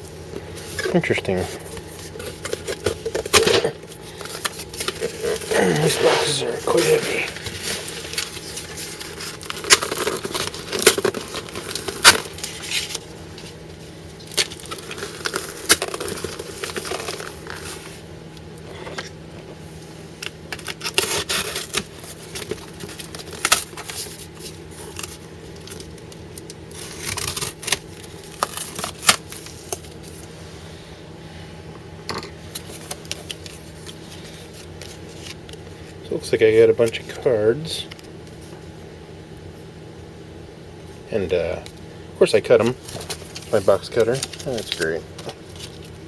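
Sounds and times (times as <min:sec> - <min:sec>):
cardboard tearing and crinkling: 0:01.0 - 0:13.6, 0:14.2 - 0:17.9, 0:20.2 - 0:30.2, 0:42.8 - 0:46.0.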